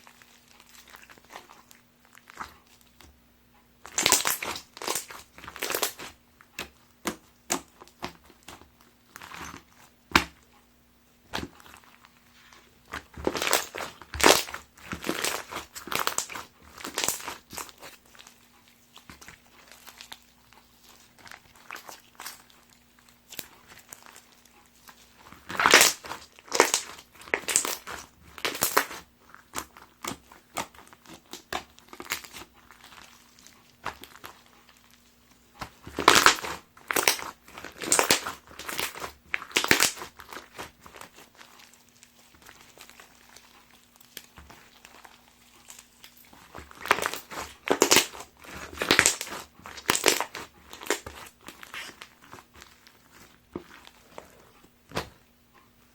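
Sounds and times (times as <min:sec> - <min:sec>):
slime with foam crunching: 0:00.0 - 0:03.2, 0:03.8 - 0:10.5, 0:11.2 - 0:55.9.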